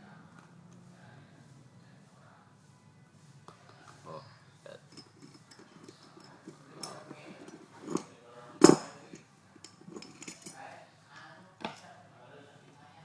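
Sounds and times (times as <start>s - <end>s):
metal tools clinking on hard surface: 4.8s - 10.8s.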